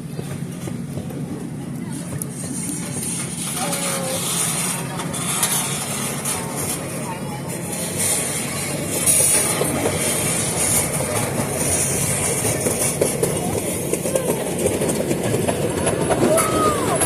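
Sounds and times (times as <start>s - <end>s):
train rumble and rattle: 0.0s - 17.0s
wheel clicks and knocks: 7.6s - 17.0s.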